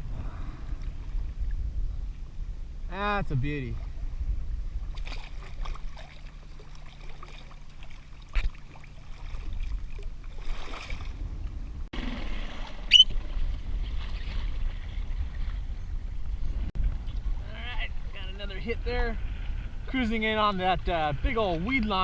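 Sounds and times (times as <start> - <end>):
water lapping against kayak: 0.0 - 2.4, 3.4 - 22.0
low wind rumble: 0.0 - 6.9, 7.5 - 22.0
sharp rising squeak: 12.9 - 13.2.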